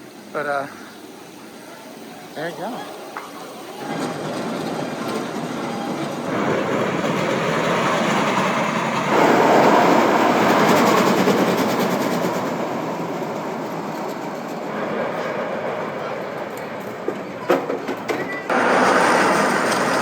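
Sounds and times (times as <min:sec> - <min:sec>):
roller coaster train rolling: 0:00.0 - 0:20.0.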